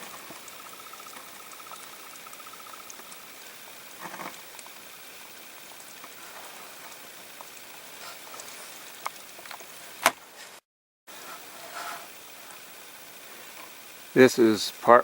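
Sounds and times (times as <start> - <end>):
thin high chirps: 0.0 - 6.0
water running down a road: 0.0 - 10.0.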